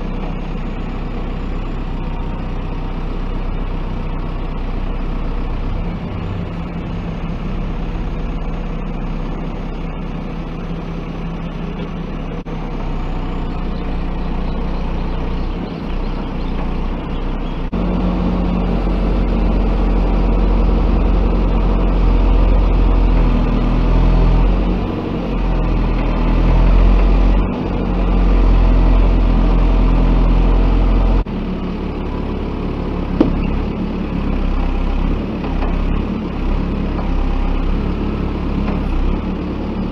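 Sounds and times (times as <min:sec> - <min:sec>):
backhoe diesel engine running: 0:00.0 - 0:39.9.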